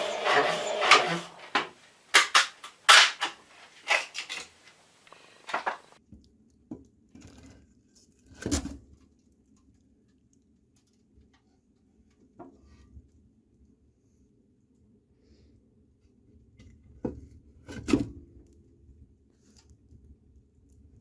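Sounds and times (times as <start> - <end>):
hard objects clattering and clinking: 0.0 - 6.0.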